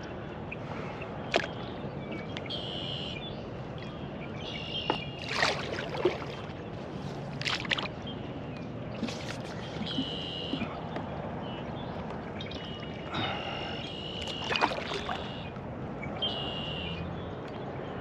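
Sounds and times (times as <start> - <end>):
water splashes: 1.2 - 2.6, 4.8 - 8.2, 8.8 - 15.6
kayak moving through water: 3.2 - 15.8.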